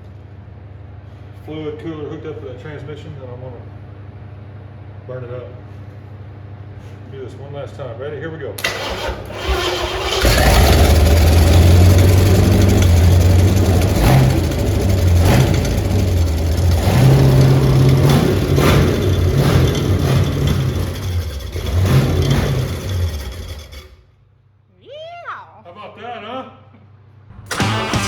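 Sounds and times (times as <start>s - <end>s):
engine revving unevenly: 8.8s - 23.9s, 27.3s - 28.0s.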